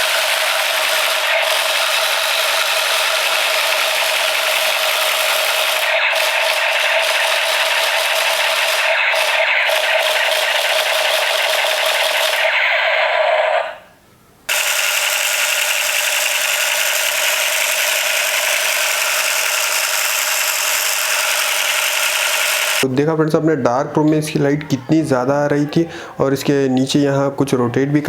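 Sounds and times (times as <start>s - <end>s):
toy gun rattling fire: 0.0s - 13.6s, 14.5s - 22.8s.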